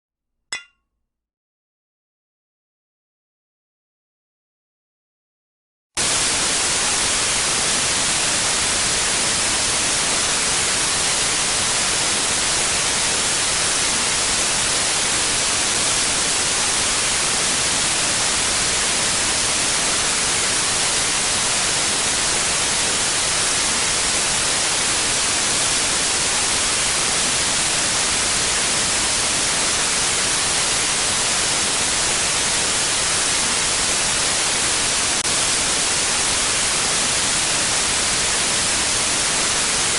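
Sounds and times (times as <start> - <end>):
static white noise hiss: 6.0 - 39.9.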